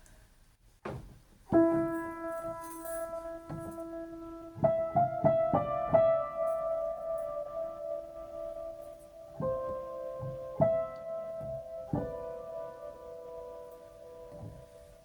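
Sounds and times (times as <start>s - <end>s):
piano notes ringing: 1.5s - 15.0s.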